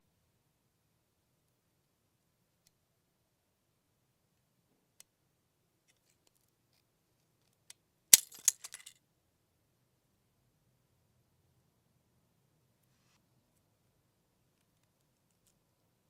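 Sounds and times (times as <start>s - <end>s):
mousetrap snapping shut: 8.2s - 8.9s
rattle of small clicks: 8.2s - 8.9s.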